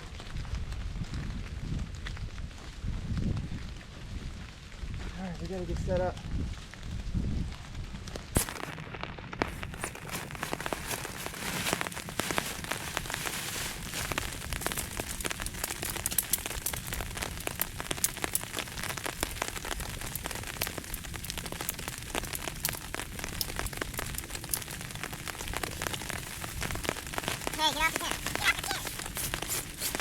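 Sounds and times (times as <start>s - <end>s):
rain falling: 0.0s - 30.0s
sharp raindrop taps: 7.8s - 30.0s.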